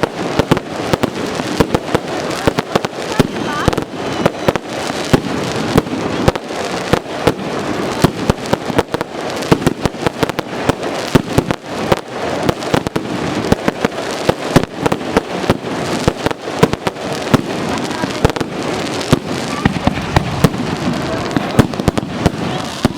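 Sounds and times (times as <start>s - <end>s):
fireworks bangs and crackles: 0.0s - 22.9s
noisy rumble: 12.4s - 22.9s.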